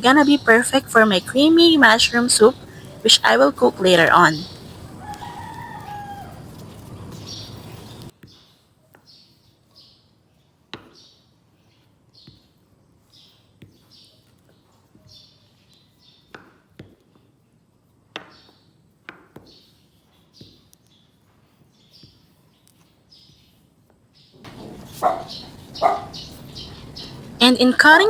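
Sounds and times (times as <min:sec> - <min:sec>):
birds chirping: 0:00.0 - 0:08.1, 0:24.4 - 0:28.0.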